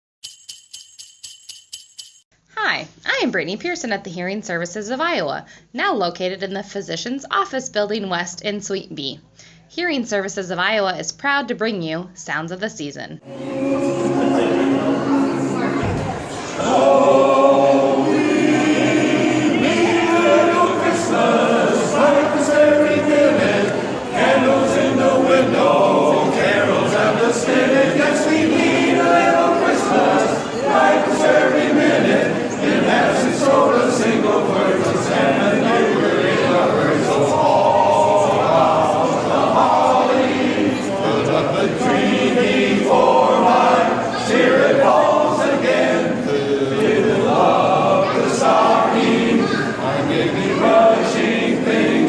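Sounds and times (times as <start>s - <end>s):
men's chorus singing close harmony: 13.2s - 15.7s, 16.4s - 52.0s.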